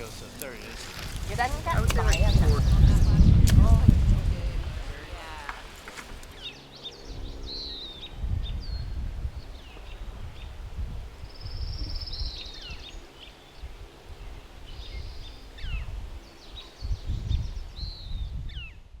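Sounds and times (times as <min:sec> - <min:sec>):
birds chirping: 0:00.0 - 0:10.6
low rumbling gusts: 0:00.0 - 0:13.0.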